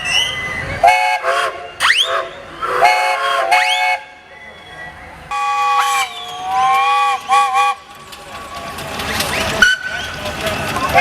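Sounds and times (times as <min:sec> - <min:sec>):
steam whistles blowing: 0:00.0 - 0:07.9.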